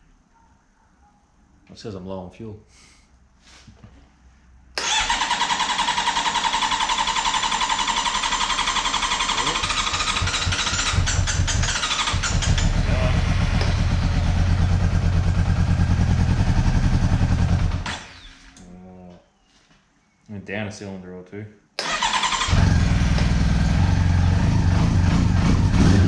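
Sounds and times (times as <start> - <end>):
motorcycle engine cranking and running: 4.8 - 18.6, 21.8 - 26.0.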